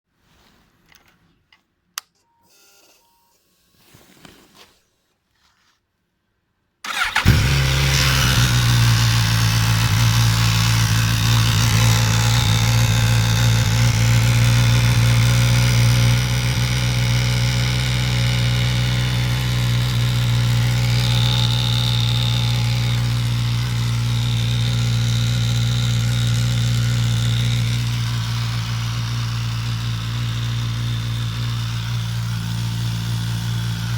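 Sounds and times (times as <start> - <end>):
motorcycle engine starting and idling: 6.8 - 33.9
engine rattle: 6.9 - 33.9.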